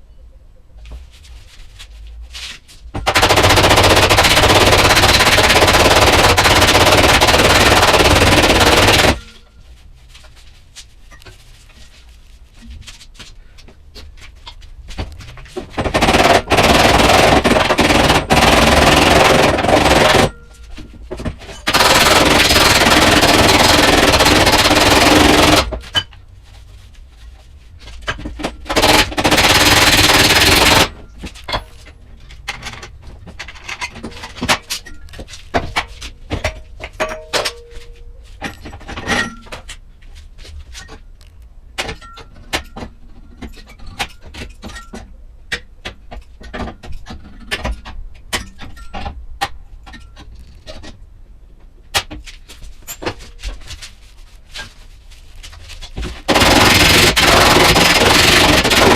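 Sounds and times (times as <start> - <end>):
loud power tool bursts: 21.6 - 25.7, 56.3 - 58.9
taps and knocks on metal: 31.2 - 39.8.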